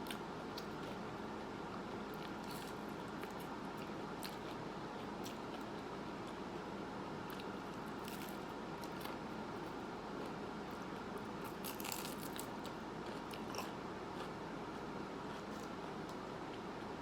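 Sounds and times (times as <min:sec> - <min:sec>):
chewing: 0:11.5 - 0:14.4.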